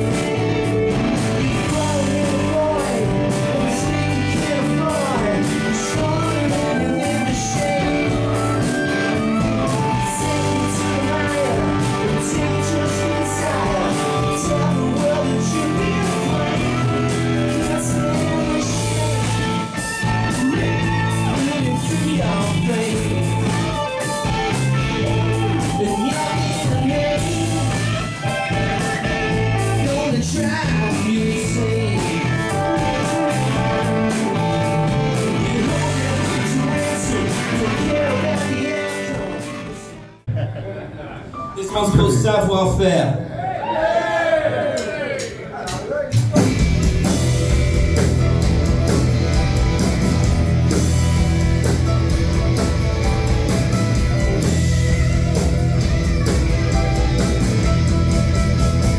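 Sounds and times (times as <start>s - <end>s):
lead vocal singing: 0.0s - 19.6s, 20.2s - 23.6s, 25.3s - 40.0s
rock band playing live: 0.0s - 40.6s, 45.7s - 58.9s.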